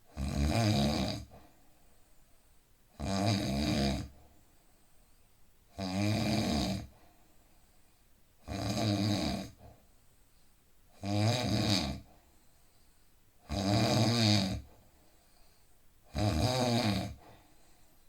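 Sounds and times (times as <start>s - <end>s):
man snoring: 0.1s - 1.3s, 3.0s - 4.1s, 5.8s - 6.9s, 8.4s - 9.6s, 11.0s - 12.1s, 13.5s - 14.7s, 16.1s - 17.2s.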